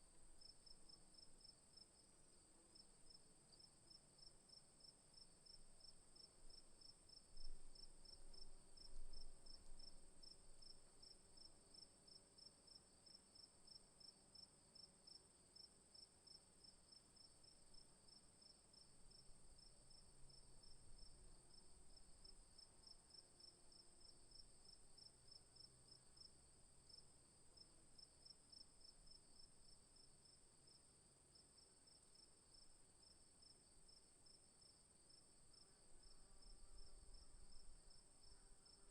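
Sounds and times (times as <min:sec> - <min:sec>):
crickets chirping: 0:04.5 - 0:38.9.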